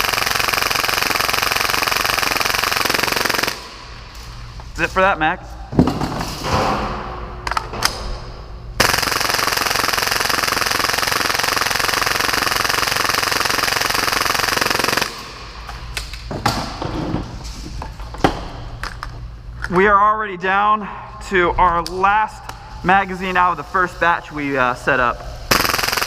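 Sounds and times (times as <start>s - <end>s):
airsoft pistol firing full-auto: 0.0s - 3.7s, 8.8s - 15.3s, 25.5s - 26.0s.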